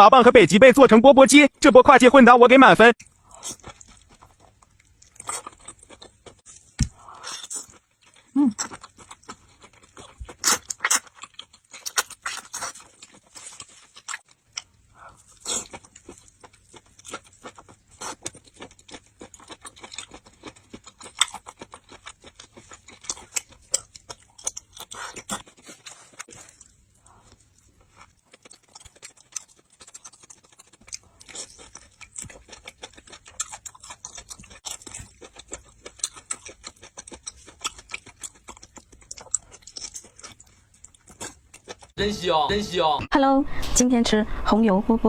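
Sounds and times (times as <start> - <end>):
close chewing smacks: 3.0 - 42.0.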